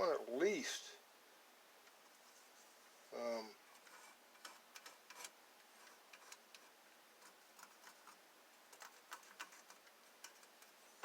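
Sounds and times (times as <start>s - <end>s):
small tools and wood clicking: 3.7s - 10.8s.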